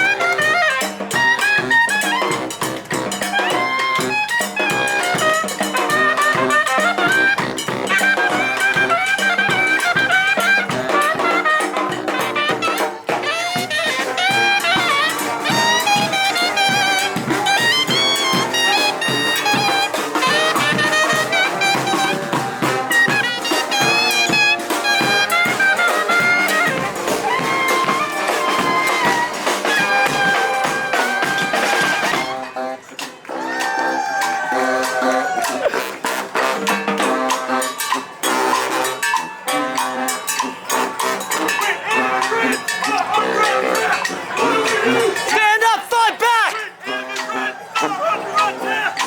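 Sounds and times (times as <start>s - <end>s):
brass band playing jazzy tune: 0.0s - 49.0s
steady drumming: 5.0s - 32.3s.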